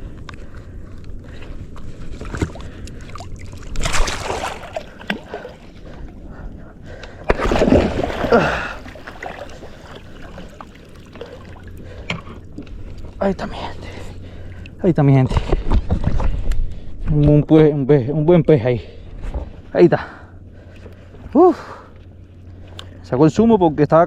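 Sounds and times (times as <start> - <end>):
water splashing around kayak: 2.0 - 6.2, 7.3 - 12.5
loud fish splashes: 3.6 - 5.7, 7.3 - 11.5.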